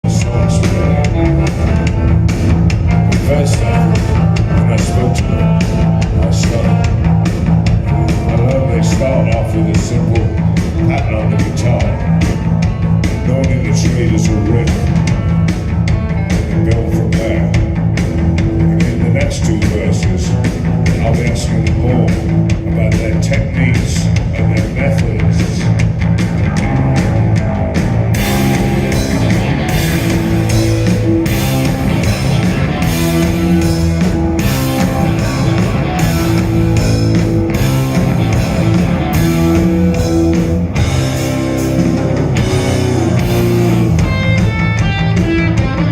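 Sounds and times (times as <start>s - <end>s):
rock music with guitar and drums: 0.0s - 45.9s.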